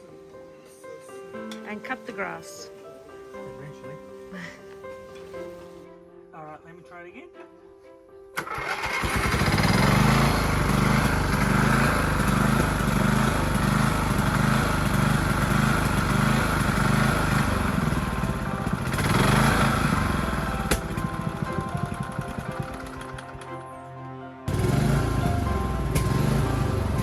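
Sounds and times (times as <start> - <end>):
mower engine running: 8.4 - 23.8, 24.5 - 27.0.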